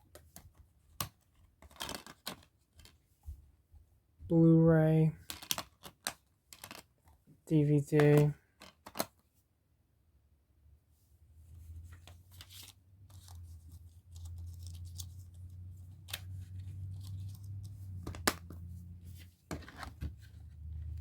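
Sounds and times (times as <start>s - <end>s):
plastic cases clicking and scraping: 0.1s - 3.0s, 5.2s - 7.2s, 8.0s - 9.2s, 12.0s - 21.0s.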